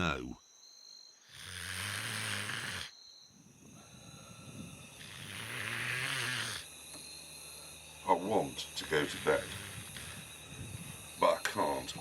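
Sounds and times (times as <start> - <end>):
faint crickets chirping: 0.0 - 12.0
man snoring: 1.2 - 3.0, 3.7 - 6.8, 7.7 - 12.0.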